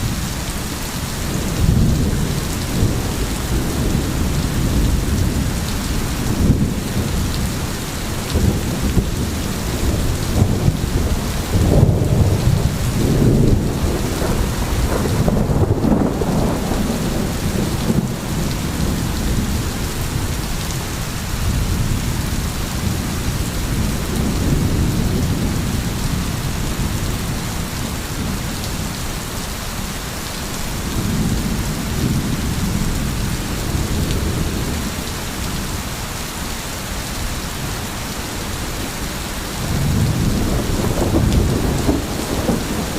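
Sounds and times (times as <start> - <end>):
steady rain falling: 0.0 - 42.9
rolling thunder: 1.2 - 29.0, 39.5 - 42.9.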